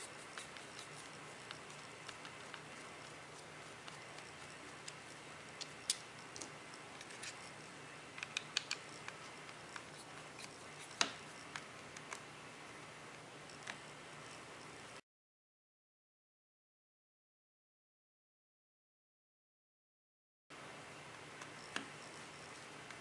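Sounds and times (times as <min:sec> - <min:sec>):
screwdriver clicking on plastic: 0:08.2 - 0:12.2.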